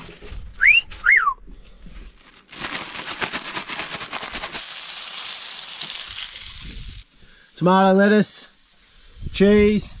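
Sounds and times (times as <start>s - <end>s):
fish frying in a pan: 4.3s - 7.6s.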